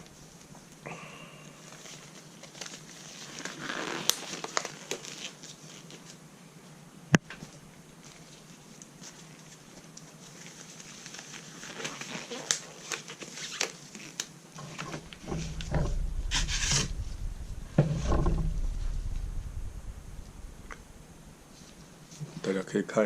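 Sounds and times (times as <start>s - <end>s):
low rumble: 14.8s - 21.9s
sharp knock: 15.0s - 21.3s.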